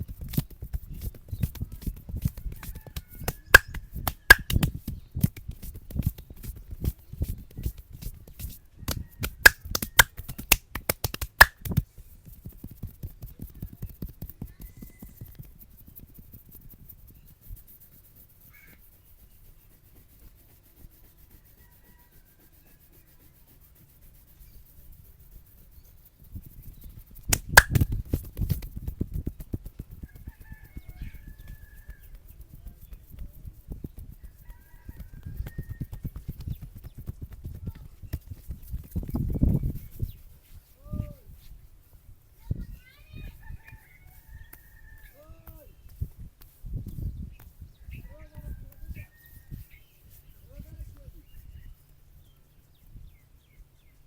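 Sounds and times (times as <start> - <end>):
hands slapping and snapping: 0.2 - 7.0, 7.6 - 11.9, 27.2 - 28.8.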